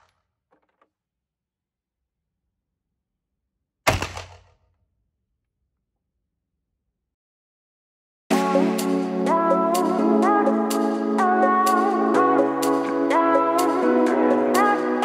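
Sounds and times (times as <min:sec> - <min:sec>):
sharp gunshot: 0:03.9 - 0:04.6.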